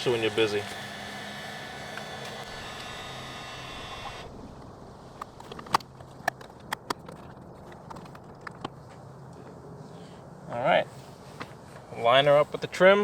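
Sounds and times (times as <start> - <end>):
heat gun fan hiss and whine: 0.0 - 4.7
sharp clicks and taps: 5.2 - 8.8.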